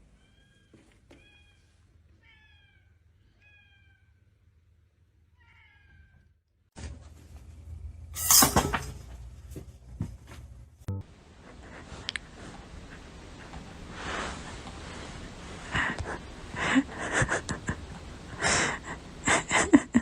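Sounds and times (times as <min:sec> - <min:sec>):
cat meowing: 0:00.2 - 0:04.2, 0:05.4 - 0:06.2.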